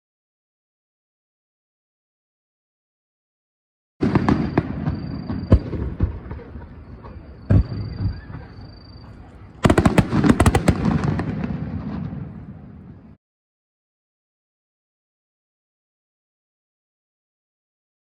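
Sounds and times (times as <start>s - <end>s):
fireworks sharp cracks: 4.0s - 13.1s
fireworks booming: 4.0s - 13.2s.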